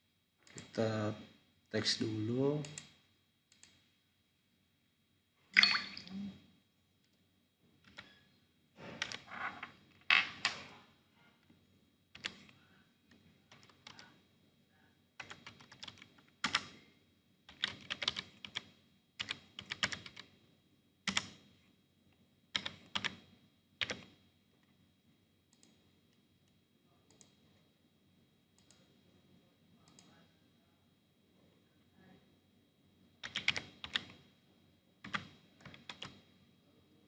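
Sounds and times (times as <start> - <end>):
computer keyboard typing: 12.2 - 12.6, 13.5 - 14.2, 15.2 - 16.8, 17.5 - 20.3, 21.1 - 21.4, 22.5 - 23.2, 23.8 - 24.1, 33.2 - 34.2, 35.0 - 36.2.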